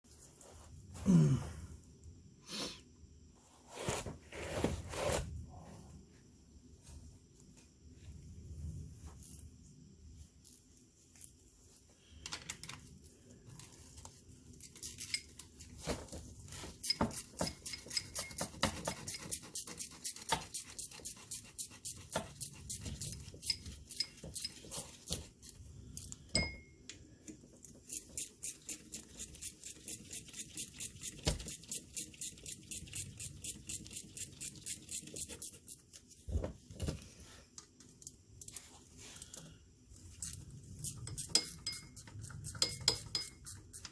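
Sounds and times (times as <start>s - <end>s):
ratchet wrench clicking: 27.9s - 35.3s.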